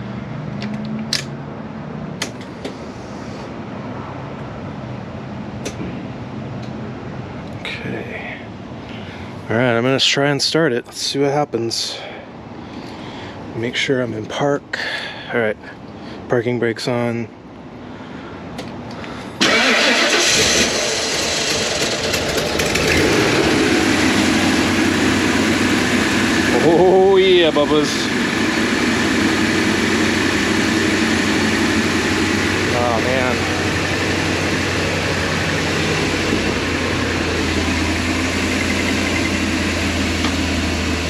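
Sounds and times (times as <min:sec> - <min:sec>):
van engine running: 0:19.4 - 0:41.0.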